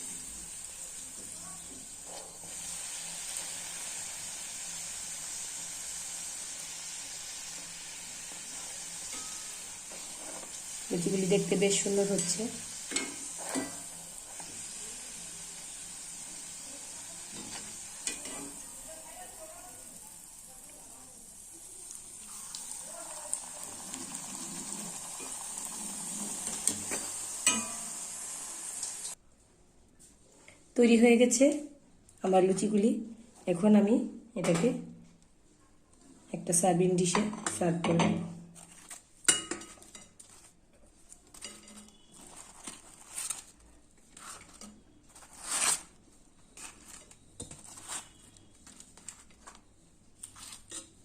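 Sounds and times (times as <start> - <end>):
dough deep-frying in oil sizzling: 0.0 - 29.2, 38.6 - 45.9.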